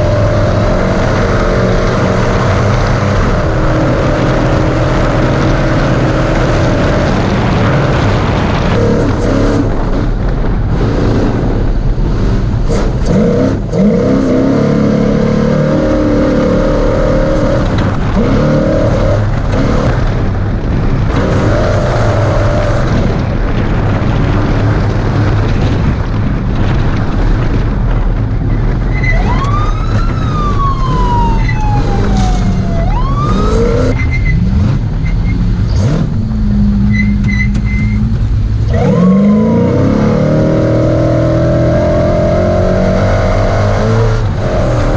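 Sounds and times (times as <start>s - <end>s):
truck engine revving hard: 0.0s - 26.2s, 28.8s - 44.9s
high whine: 28.5s - 44.9s.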